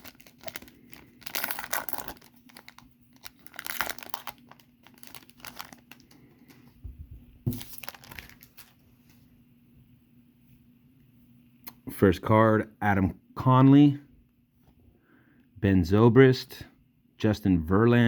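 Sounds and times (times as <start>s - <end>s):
wrapper torn open and crinkled: 0.0s - 6.6s, 7.5s - 8.8s.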